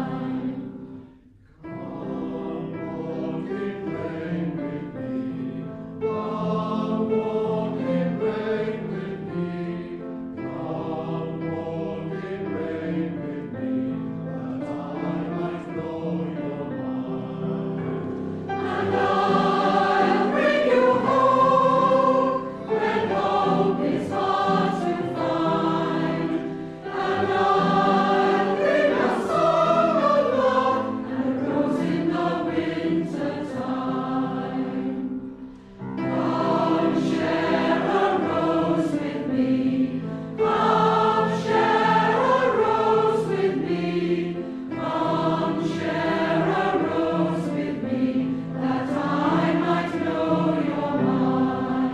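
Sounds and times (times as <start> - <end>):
group singing a hymn: 0.0 - 51.9.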